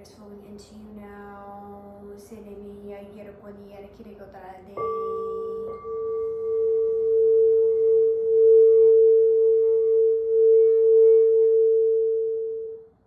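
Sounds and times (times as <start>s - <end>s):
crystal singing bowl tone: 4.8s - 13.0s.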